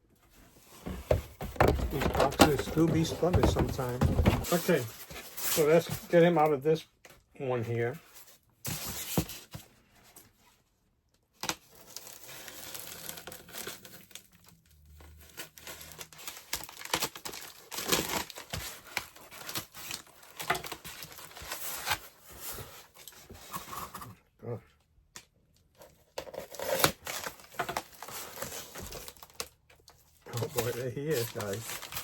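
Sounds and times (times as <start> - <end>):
packaging crinkling and rustling: 0.7 - 6.1, 11.5 - 23.9, 25.8 - 32.0.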